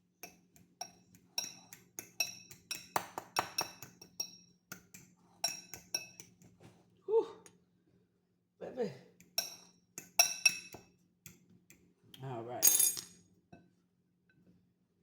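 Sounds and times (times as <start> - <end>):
utensil clinking on bowl: 0.2 - 6.4, 9.4 - 10.8, 12.6 - 13.2.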